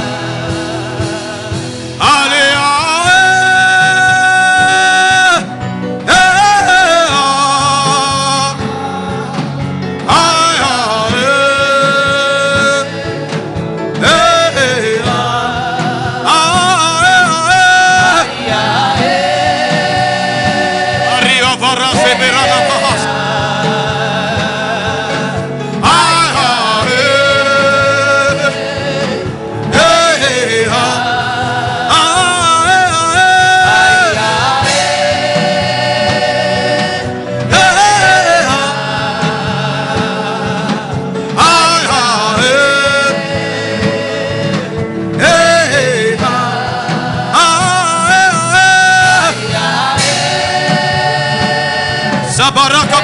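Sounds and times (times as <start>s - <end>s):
instrumental backing: 0.0s - 53.0s
person singing gospel song: 0.0s - 53.0s.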